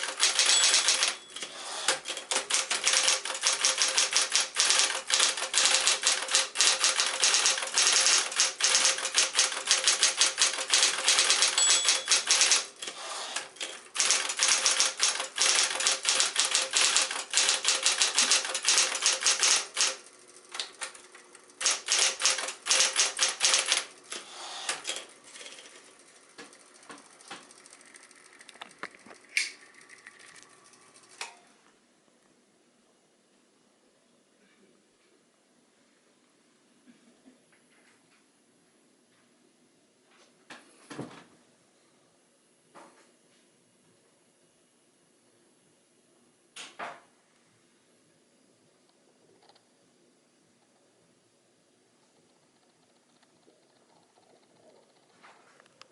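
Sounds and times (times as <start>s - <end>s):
typewriter keystrokes: 0.0s - 21.0s, 21.6s - 25.8s.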